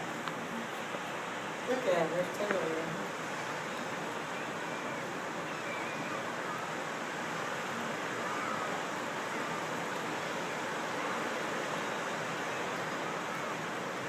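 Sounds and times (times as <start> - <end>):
steady rushing background noise: 0.0 - 14.0.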